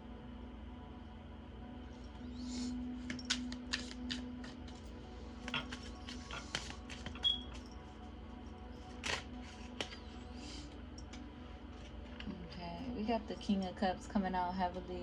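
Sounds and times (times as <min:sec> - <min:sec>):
soft musical drone: 0:00.0 - 0:15.0
cards shuffling: 0:03.0 - 0:07.8, 0:08.8 - 0:10.1.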